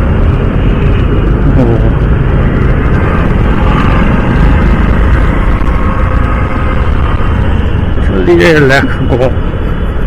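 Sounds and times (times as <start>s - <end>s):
motorcycle engine running: 0.0s - 8.0s
wind on microphone: 0.0s - 10.0s.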